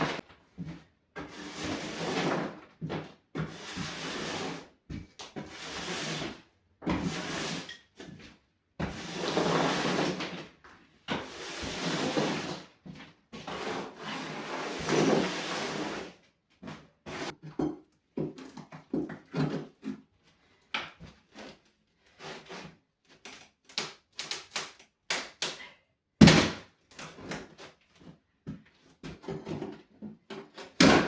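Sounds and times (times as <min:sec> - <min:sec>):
wooden floorboards scraping and knocking: 0:08.0 - 0:20.1.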